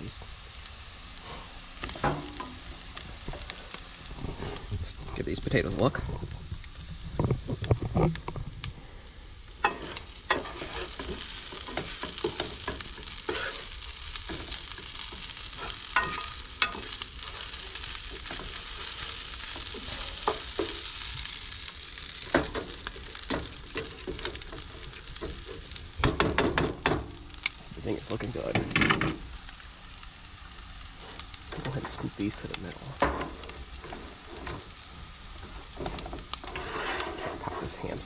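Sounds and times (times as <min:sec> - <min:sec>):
potatoes sizzling in a pan: 0:00.0 - 0:38.0
utensil scraping and knocking pan: 0:09.6 - 0:13.7, 0:15.2 - 0:20.8, 0:35.7 - 0:37.9.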